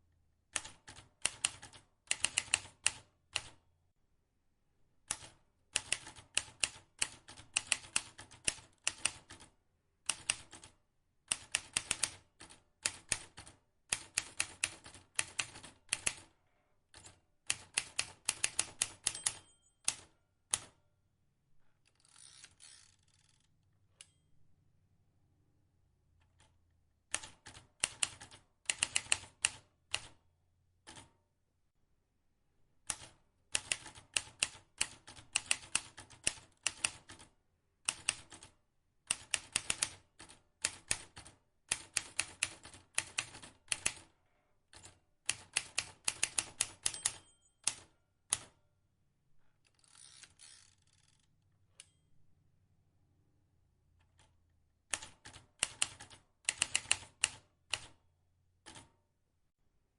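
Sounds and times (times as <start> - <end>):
typewriter keys clicking: 32.9 - 37.2, 39.1 - 44.0, 44.8 - 48.5, 54.9 - 57.9.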